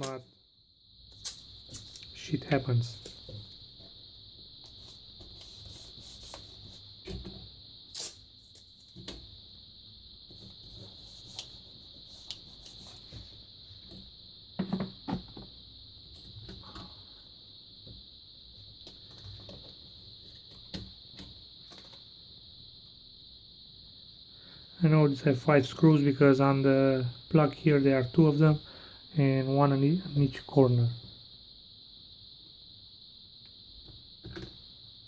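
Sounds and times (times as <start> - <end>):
steady high hiss: 0.0 - 35.0
clicks and knocks of handling parts: 1.1 - 2.2.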